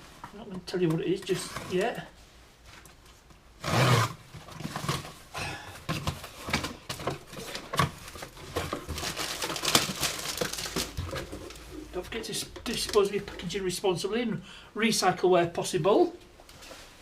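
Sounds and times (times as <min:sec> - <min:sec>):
packaging rustling and crinkling: 0:04.2 - 0:13.6
cardboard packaging ripping: 0:06.6 - 0:11.6.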